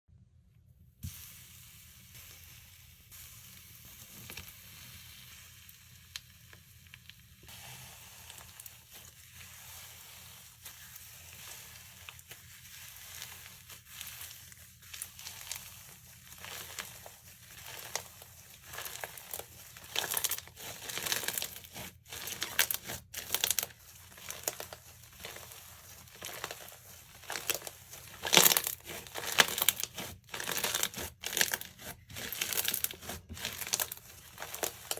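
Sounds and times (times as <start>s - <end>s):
slime squished by hand: 10.9s - 34.9s.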